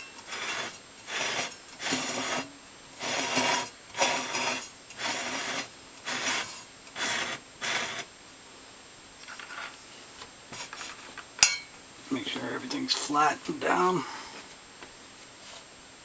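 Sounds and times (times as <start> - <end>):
wood scraping in steel slot: 0.0 - 8.1.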